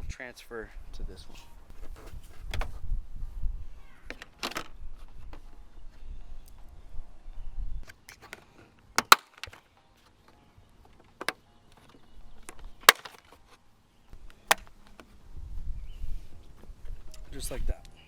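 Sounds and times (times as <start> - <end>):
plastic clips clicking and snapping: 9.0 - 9.6, 12.4 - 13.3.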